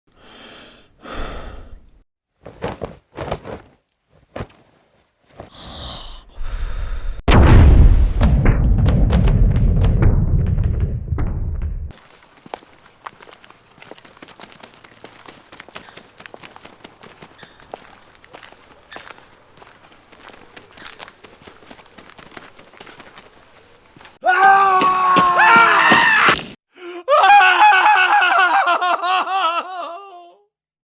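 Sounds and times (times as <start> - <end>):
breathy sigh-like exhale: 0.2 - 1.9, 5.5 - 7.2
loud wailing cry: 24.2 - 26.4, 27.0 - 30.4.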